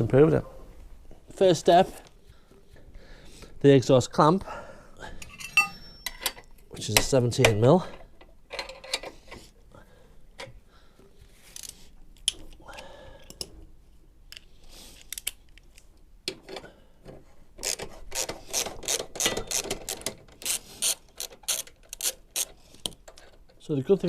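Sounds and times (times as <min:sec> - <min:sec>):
metallic clinks: 0:05.2 - 0:06.5
ratchet clicking: 0:17.6 - 0:23.2.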